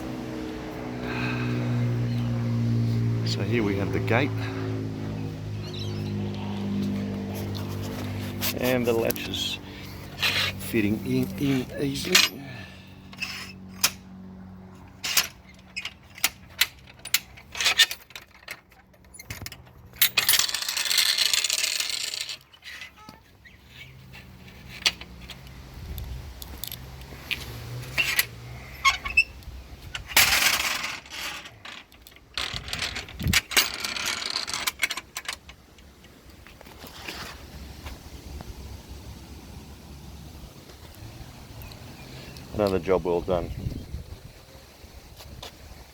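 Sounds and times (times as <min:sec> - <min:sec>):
metal gate latches clinking: 0:08.6 - 0:12.6, 0:13.2 - 0:14.0, 0:14.9 - 0:23.2.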